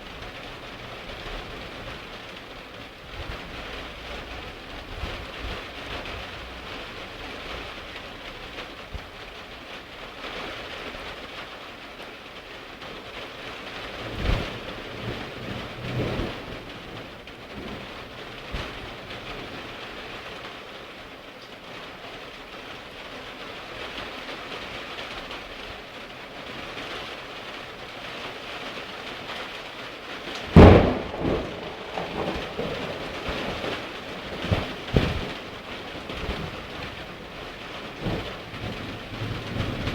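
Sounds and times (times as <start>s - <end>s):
loud thunderclap rolling: 0.0s - 8.3s, 13.8s - 20.5s, 30.3s - 39.9s
heavy rain falling: 0.0s - 39.9s
thunder strikes: 30.4s - 39.9s.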